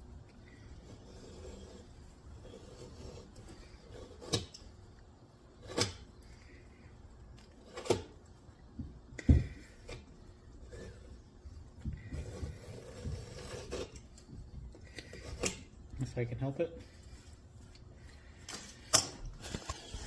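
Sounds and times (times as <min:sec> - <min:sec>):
knife cutting leather: 0:12.0 - 0:15.7.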